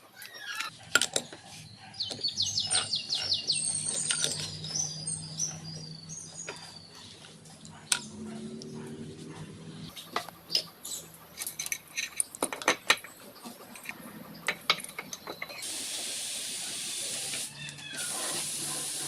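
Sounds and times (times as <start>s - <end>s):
tools clicking on engine parts: 2.6s - 6.6s, 9.9s - 15.7s
spray hissing: 15.6s - 19.0s.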